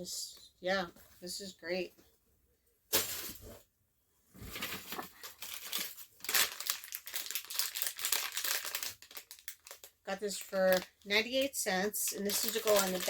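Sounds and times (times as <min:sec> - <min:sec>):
plastic packaging crinkling: 0:04.5 - 0:13.0.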